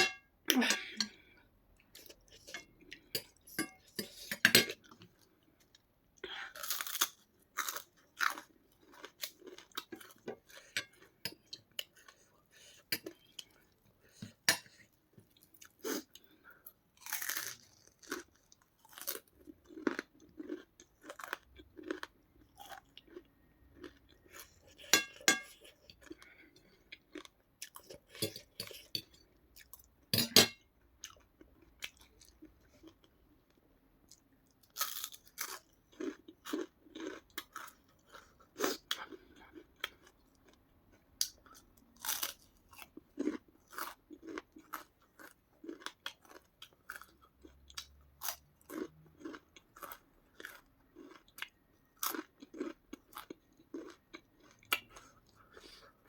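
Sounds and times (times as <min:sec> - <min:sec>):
person chewing crunchy food: 0:06.4 - 0:33.1, 0:34.1 - 0:56.0.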